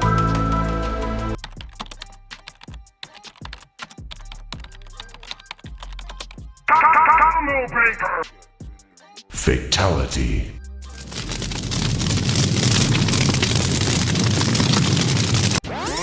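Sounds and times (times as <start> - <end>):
typing on computer keyboard: 1.4 - 6.4.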